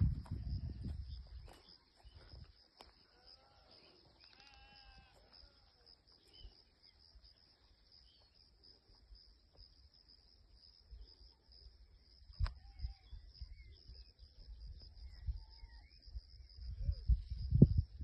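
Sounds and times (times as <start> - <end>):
faint livestock bleating: 3.0 - 5.9.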